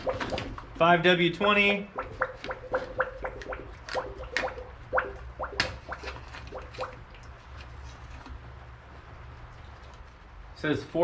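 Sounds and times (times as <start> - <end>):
low steady hum: 0.0 - 11.0
oil glugging from jug: 1.9 - 7.6.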